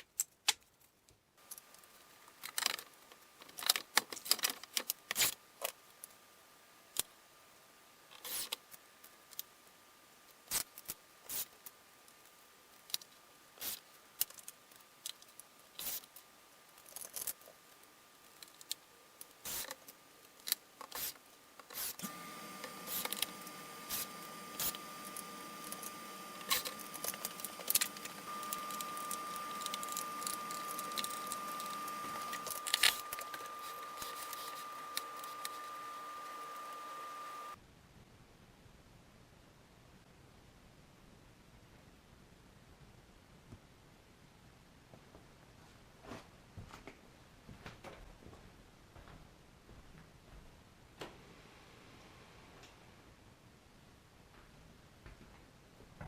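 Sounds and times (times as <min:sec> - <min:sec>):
steady machine hum: 0:21.9 - 0:37.6.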